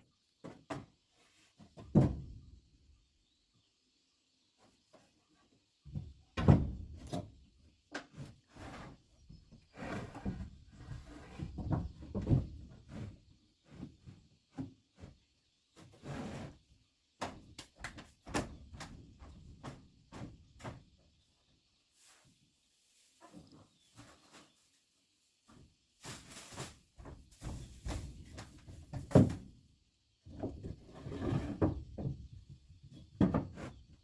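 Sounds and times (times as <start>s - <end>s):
wood scraping: 8.0s - 15.2s, 30.3s - 32.2s.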